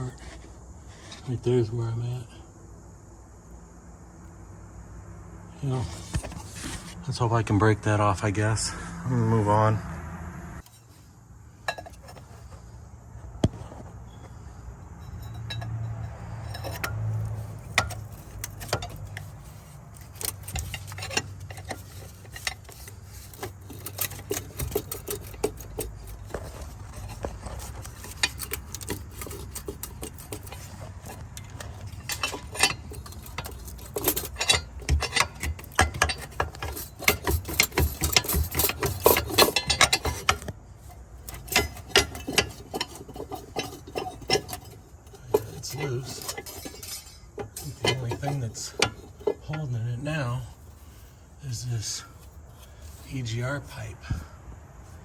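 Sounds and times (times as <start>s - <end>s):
metal hand tools clinking: 14.9s - 53.9s
ratchet wrench clicking: 15.1s - 40.5s, 41.2s - 49.4s.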